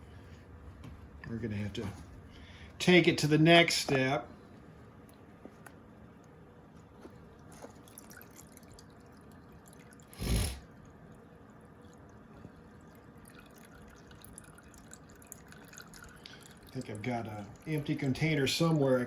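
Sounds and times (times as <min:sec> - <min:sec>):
fuel dripping into container: 0:07.3 - 0:18.9.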